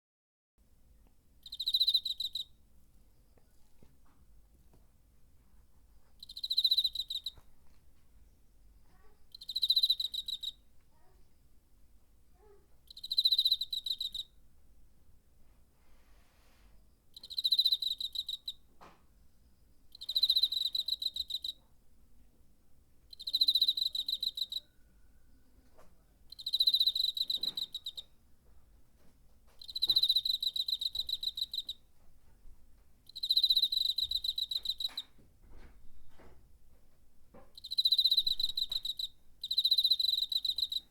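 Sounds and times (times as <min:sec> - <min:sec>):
cricket chirping: 0:01.4 - 0:02.5, 0:06.2 - 0:07.4, 0:09.3 - 0:10.6, 0:12.9 - 0:14.4, 0:17.1 - 0:18.6, 0:19.9 - 0:21.6, 0:23.1 - 0:24.8, 0:26.3 - 0:28.1, 0:29.6 - 0:31.8, 0:33.1 - 0:35.1, 0:37.6 - 0:40.9.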